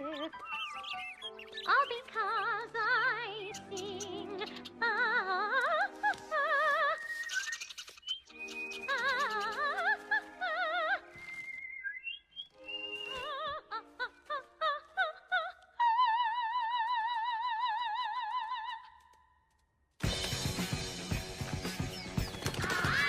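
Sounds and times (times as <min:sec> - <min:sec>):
operatic soprano singing: 0:01.5 - 0:07.4, 0:08.8 - 0:11.4, 0:13.0 - 0:19.0.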